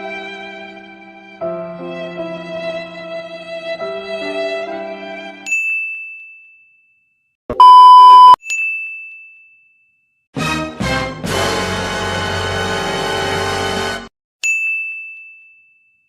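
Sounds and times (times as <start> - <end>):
censor beep: 7.5 - 8.4.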